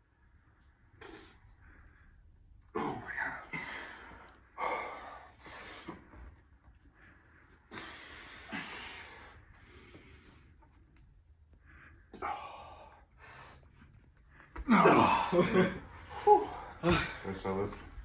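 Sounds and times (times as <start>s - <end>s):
strained breathing and grunts: 2.6s - 6.5s, 14.4s - 18.0s.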